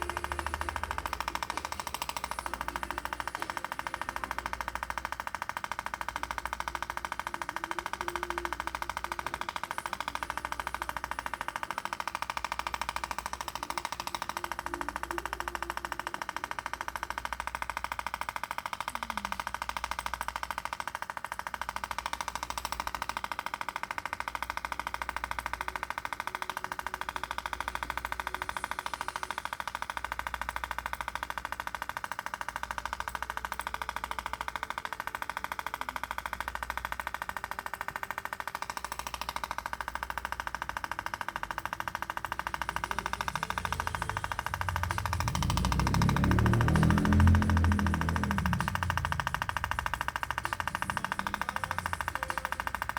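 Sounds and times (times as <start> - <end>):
low throb: 0.0 - 5.4, 42.2 - 52.9
tattoo machine buzzing: 0.0 - 52.9.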